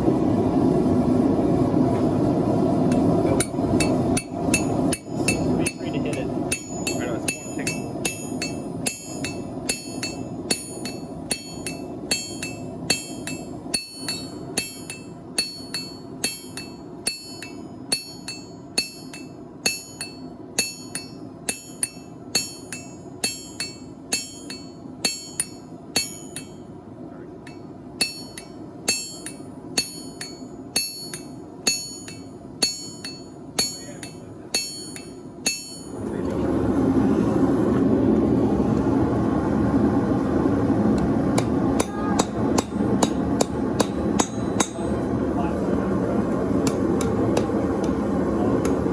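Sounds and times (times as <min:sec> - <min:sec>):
steady rushing noise: 0:00.0 - 0:48.9
hammer clanging on anvil: 0:03.0 - 0:26.6, 0:27.4 - 0:35.9, 0:41.4 - 0:44.9.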